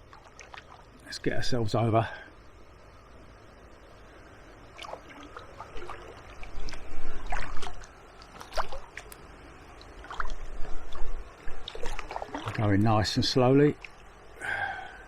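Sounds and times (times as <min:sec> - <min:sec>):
paddle strokes splashing in water: 0:00.0 - 0:00.9, 0:04.7 - 0:09.2, 0:09.8 - 0:12.9
water trickling off paddle: 0:04.7 - 0:14.2.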